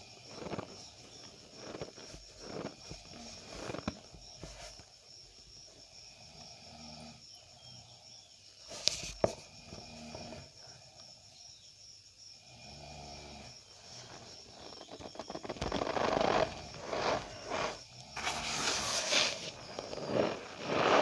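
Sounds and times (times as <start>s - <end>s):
squeaky powder crunches: 14.0s - 21.0s.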